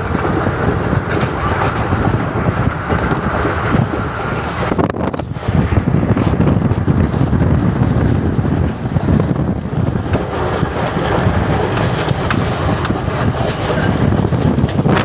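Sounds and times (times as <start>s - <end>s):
express train moving: 0.0s - 15.0s
wind buffeting microphone: 0.0s - 15.0s.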